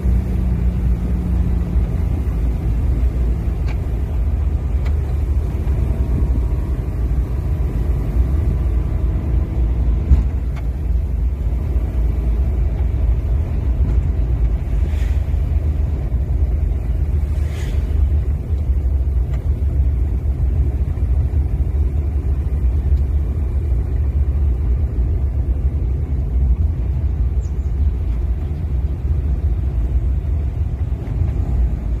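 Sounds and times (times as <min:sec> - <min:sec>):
steady low rumble: 0:00.0 - 0:32.0.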